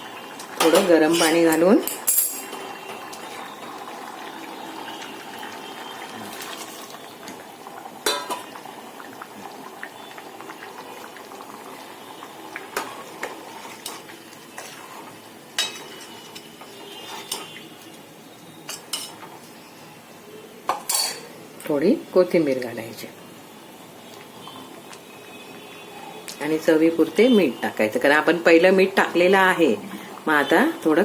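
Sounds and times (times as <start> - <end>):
spoon stirring and knocking pot: 15.6 - 16.5.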